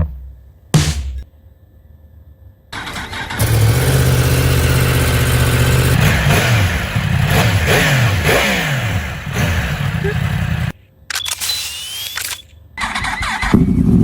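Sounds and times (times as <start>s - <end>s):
engine throttle blips: 0.0s - 1.3s, 2.8s - 10.7s
motorcycle engine idling: 3.4s - 10.7s.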